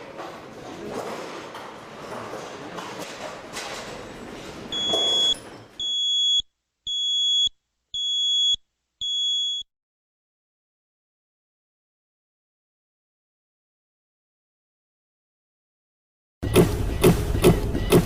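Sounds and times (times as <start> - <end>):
high-pitched alarm beeps: 4.7 - 9.7.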